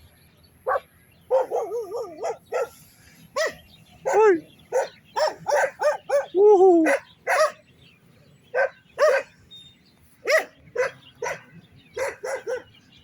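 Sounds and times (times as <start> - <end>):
dogs barking: 0.6 - 7.7, 8.5 - 9.4, 10.2 - 13.0
dog yapping: 0.7 - 2.8, 3.4 - 7.6, 8.6 - 9.3, 10.2 - 12.7.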